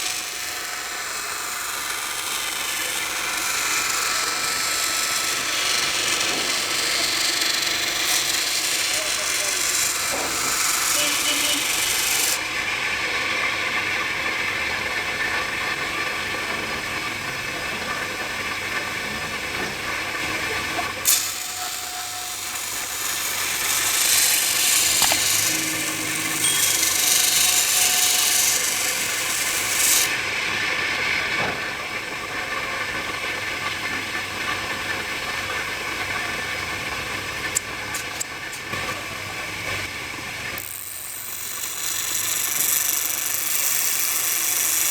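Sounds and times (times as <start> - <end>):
scissor blade being sharpened: 23.4 - 25.7.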